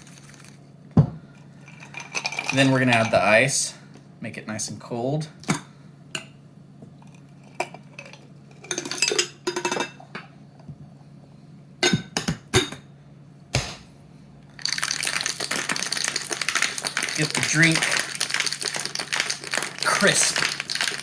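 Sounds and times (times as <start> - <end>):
cocktail shaker rattling with ice: 1.7 - 3.2, 14.6 - 21.0
ice cubes clinking: 14.6 - 21.0.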